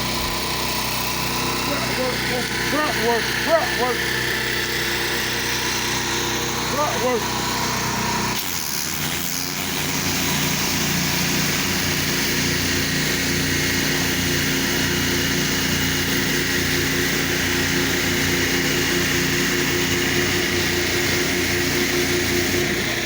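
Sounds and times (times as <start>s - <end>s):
pressure washer engine running: 0.0s - 23.0s
high-pressure water spray hissing: 8.4s - 23.0s.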